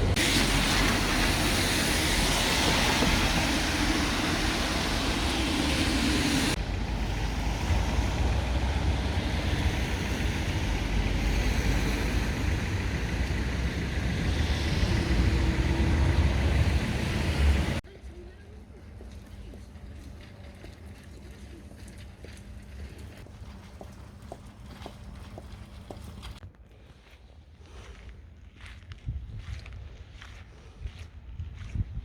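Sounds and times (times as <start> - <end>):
passing road vehicles: 0.0 - 17.9.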